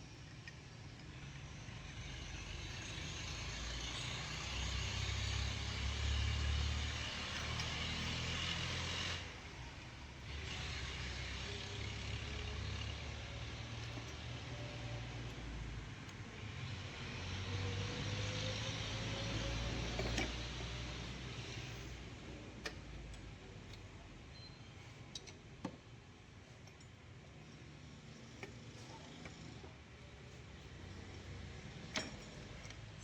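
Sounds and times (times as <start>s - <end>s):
tools clicking and tapping: 25.1s - 25.8s, 31.2s - 33.0s.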